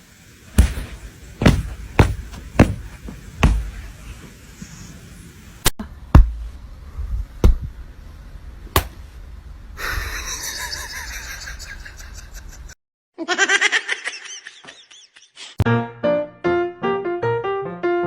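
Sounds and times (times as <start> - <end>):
sharp knocks: 0.6 - 4.0
people laughing: 9.8 - 15.6.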